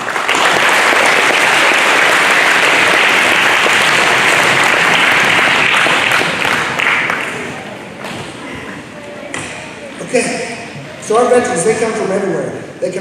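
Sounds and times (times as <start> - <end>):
audience applauding: 0.0 - 7.6.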